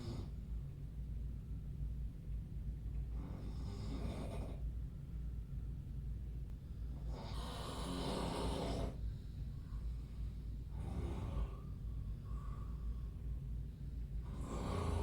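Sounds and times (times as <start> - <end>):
steady low hum: 0.0 - 15.0
man snoring: 14.3 - 15.0.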